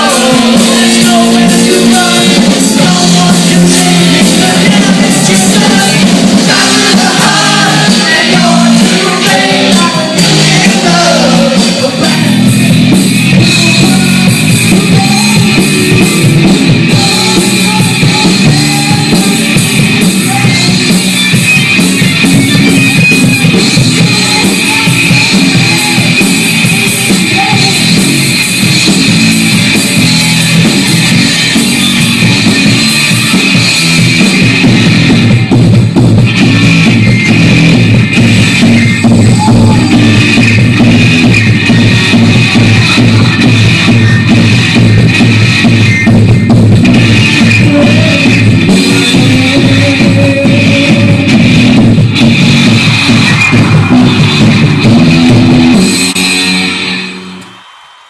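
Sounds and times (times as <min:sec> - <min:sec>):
person singing: 0:00.0 - 0:34.0, 0:38.4 - 0:45.3, 0:46.9 - 0:51.9
drum kit: 0:00.0 - 0:58.0
electric guitars: 0:00.0 - 0:58.0
rock band playing live: 0:00.0 - 0:58.0.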